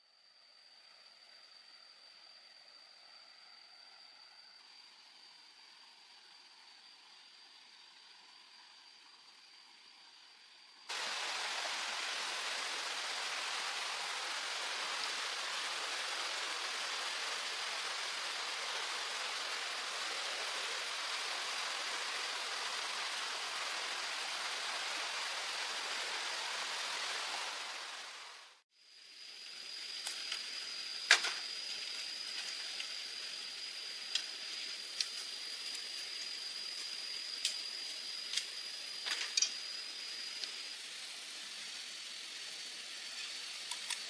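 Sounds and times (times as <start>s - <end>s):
high-pitched whine: 0.2s - 44.0s
rushing water: 10.9s - 28.6s.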